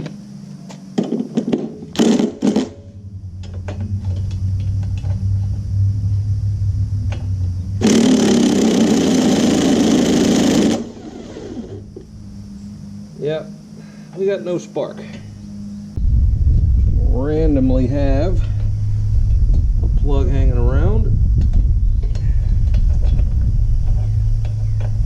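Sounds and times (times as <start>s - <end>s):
impact driver spinning engine: 1.9s - 2.9s, 7.1s - 12.1s
loud harsh rattling: 7.8s - 11.8s.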